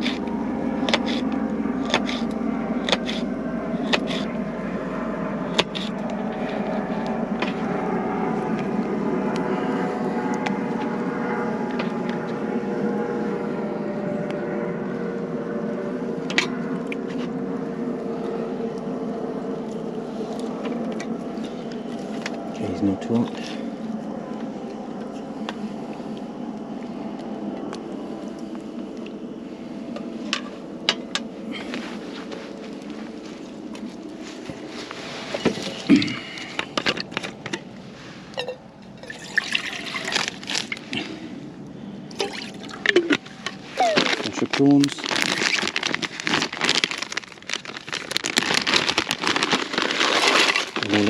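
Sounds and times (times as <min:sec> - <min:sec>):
plastic bag crinkling: 0:39.9 - 0:41.0, 0:43.0 - 0:51.0.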